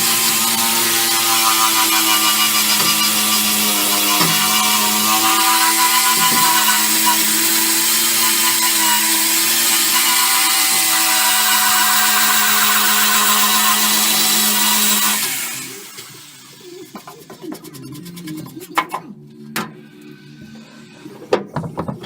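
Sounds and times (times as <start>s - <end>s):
angle grinder with wire wheel: 0.0s - 16.8s.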